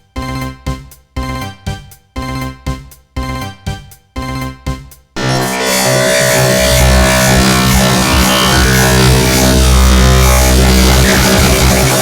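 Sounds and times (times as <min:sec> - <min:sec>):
electronic midi ringtone music: 0:05.2 - 0:12.0.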